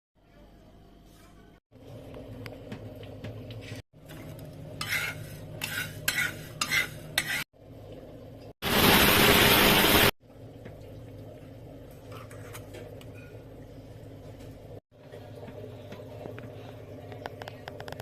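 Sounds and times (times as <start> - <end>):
spoon scraping in a pan: 4.7 - 7.5.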